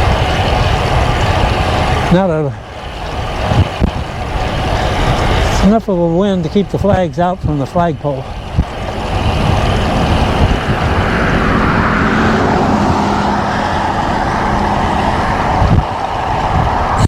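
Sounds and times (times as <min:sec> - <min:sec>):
passing vehicle tyre noise: 0:00.0 - 0:17.0
wind rushing over microphone: 0:00.0 - 0:17.0.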